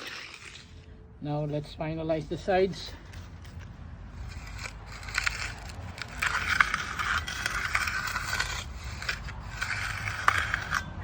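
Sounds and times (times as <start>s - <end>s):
hand tool scraping wet concrete: 0.0s - 0.8s, 4.1s - 11.0s.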